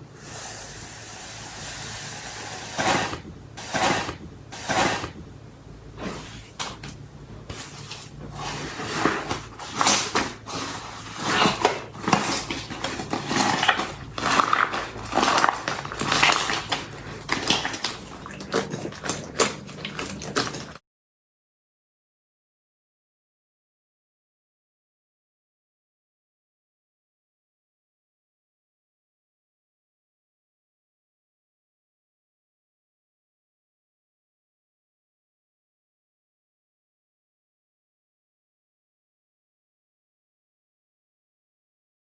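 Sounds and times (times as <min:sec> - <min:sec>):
slime squelching: 0:06.0 - 0:20.8.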